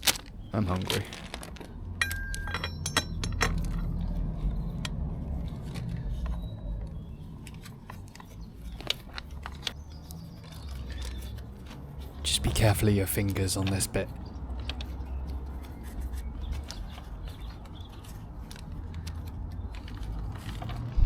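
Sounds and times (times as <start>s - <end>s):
small metal parts clinking: 0.0s - 6.5s
low handling rumble: 0.0s - 9.7s, 19.6s - 21.0s
sharp ringing clicks: 2.0s - 3.6s.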